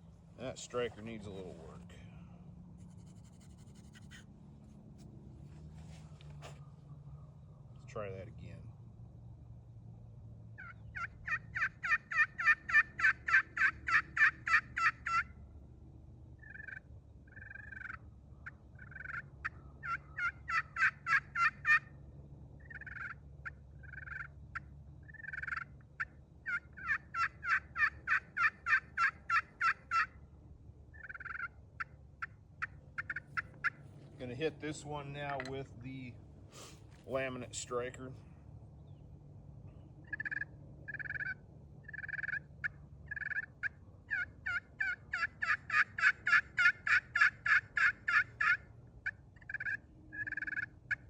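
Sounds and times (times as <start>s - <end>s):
turkey call yelps: 10.6s - 15.4s, 16.4s - 22.0s, 22.6s - 30.2s, 30.9s - 33.9s, 40.0s - 51.0s.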